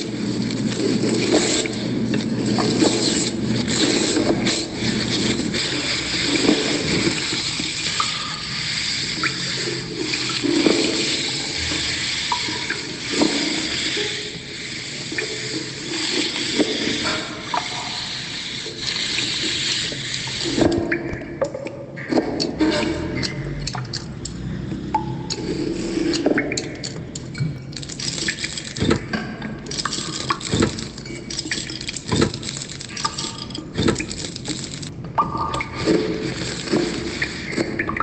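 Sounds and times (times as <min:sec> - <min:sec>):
small clicks and splashes: 0:15.0 - 0:38.0.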